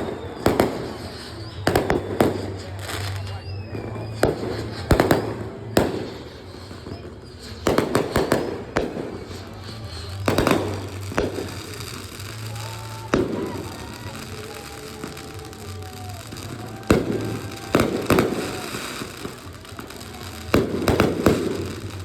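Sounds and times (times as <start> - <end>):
fireworks bursting: 0.0 - 22.0.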